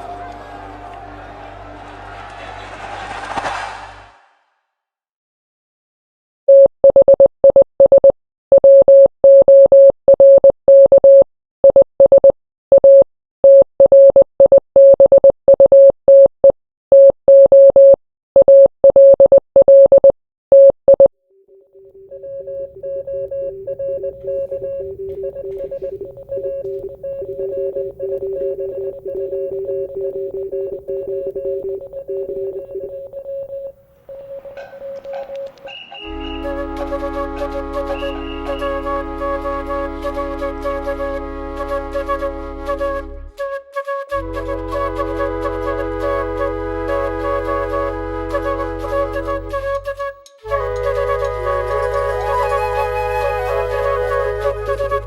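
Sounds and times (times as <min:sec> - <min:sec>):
morse code beeps: 0:06.5 - 0:36.6, 0:37.9 - 0:39.0
two-tone held drone: 0:21.4 - 0:33.2, 0:36.0 - 0:42.2.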